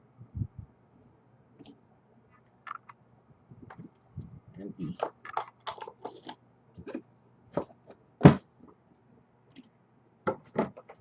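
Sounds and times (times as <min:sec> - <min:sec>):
packaging clicks and rustles: 0:05.0 - 0:07.0.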